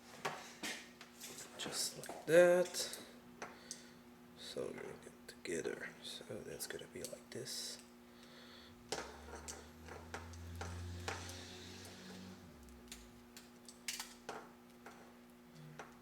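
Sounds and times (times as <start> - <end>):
faint steady hum: 0.0 - 16.0
low hum: 8.4 - 13.4
clicks of wires and hand tools: 8.9 - 16.0.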